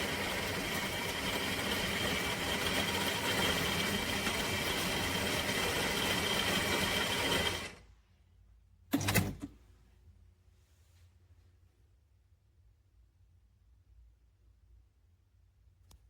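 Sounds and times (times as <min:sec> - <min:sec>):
espresso machine buzzing: 0:00.0 - 0:07.8.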